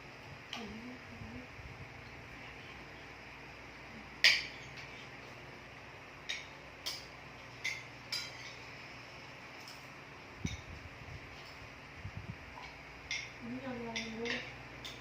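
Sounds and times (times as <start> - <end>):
cutlery clinking against plates: 4.2 - 5.0, 6.2 - 8.7, 9.6 - 9.9, 12.6 - 15.0.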